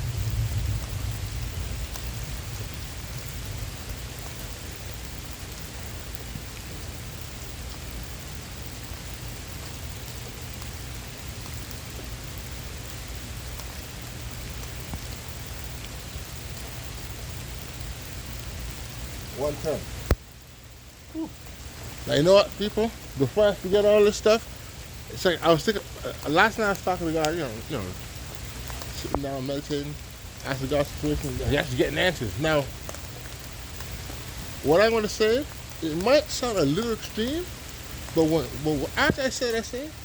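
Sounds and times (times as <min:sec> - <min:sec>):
low thunder rumble: 0:00.0 - 0:05.5
heavy rain falling: 0:00.0 - 0:40.0.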